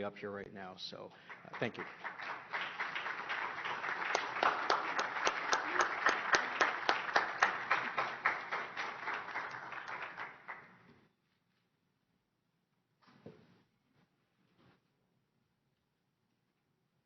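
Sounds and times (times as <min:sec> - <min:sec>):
audience applauding: 0:01.1 - 0:10.8.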